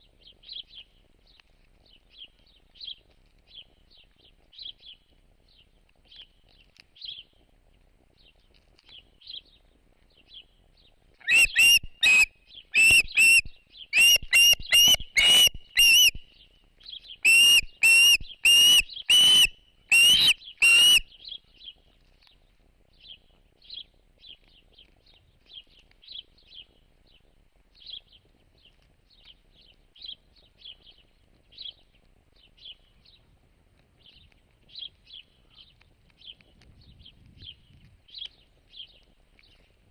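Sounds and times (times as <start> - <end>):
bird whistled calls: 11.2 - 16.2, 17.2 - 21.4.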